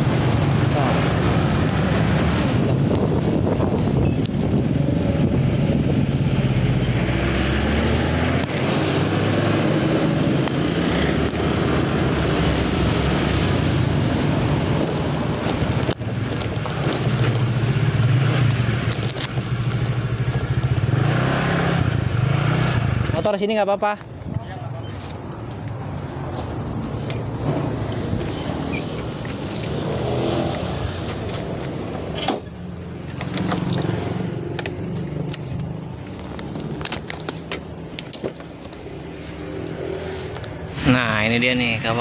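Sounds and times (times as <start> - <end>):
wind rushing over microphone: 0.0 - 23.2
motorcycle engine running: 15.2 - 23.4.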